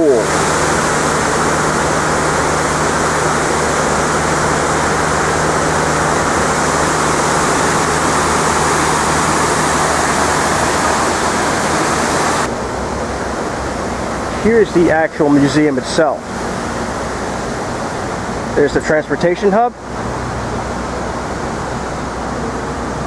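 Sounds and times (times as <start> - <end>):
waterfall pouring: 0.0 - 12.5.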